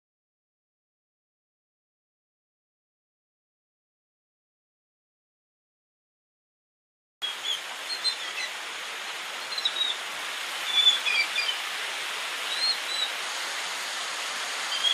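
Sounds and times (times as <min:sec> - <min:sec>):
small birds chirping: 0:07.2 - 0:08.6, 0:09.3 - 0:11.8, 0:12.4 - 0:13.2, 0:14.6 - 0:14.9
steady rushing hiss: 0:07.2 - 0:14.9.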